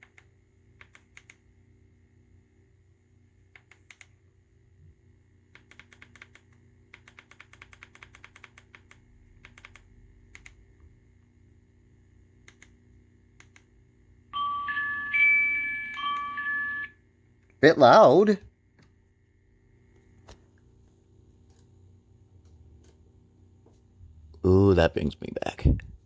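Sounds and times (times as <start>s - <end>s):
laptop keyboard typing: 0.0s - 1.4s, 3.5s - 4.1s, 5.5s - 10.9s, 12.4s - 12.8s, 13.4s - 13.7s
low steady hum: 0.1s - 5.6s, 8.6s - 26.0s.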